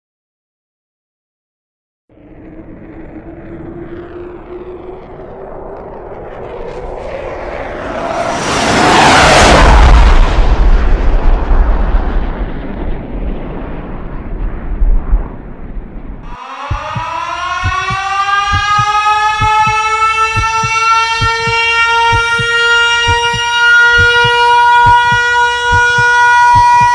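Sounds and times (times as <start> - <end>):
air-raid siren winding up: 16.3 - 26.9
kick-drum beat: 16.7 - 19.8, 20.4 - 26.9.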